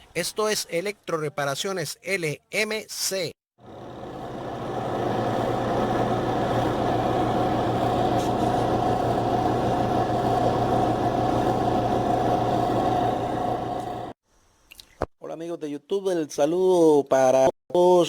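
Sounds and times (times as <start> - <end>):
washing machine motor humming: 3.6 - 14.2.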